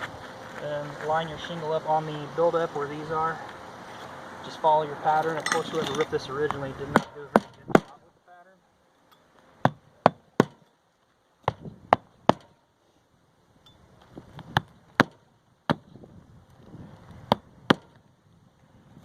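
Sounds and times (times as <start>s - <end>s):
shingles shuffling: 5.0s - 8.0s
hatchet hammering nails into shingles: 5.2s - 8.0s, 9.6s - 10.7s, 11.4s - 12.6s, 14.5s - 15.9s, 17.3s - 18.0s.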